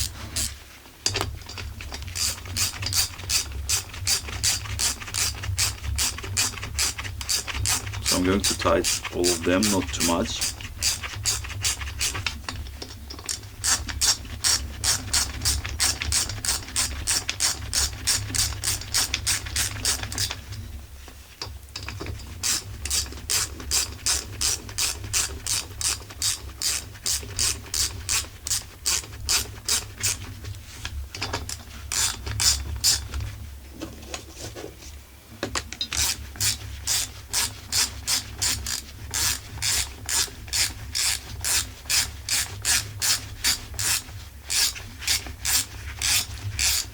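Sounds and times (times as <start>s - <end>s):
ratchet wrench clicking: 24.8s - 30.2s, 35.9s - 46.9s.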